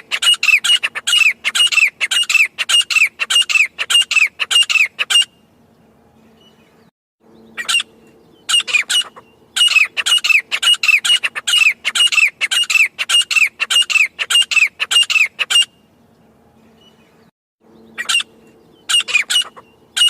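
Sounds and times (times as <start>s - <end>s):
francolin calling: 0.0s - 5.3s, 7.3s - 15.8s, 17.7s - 20.0s.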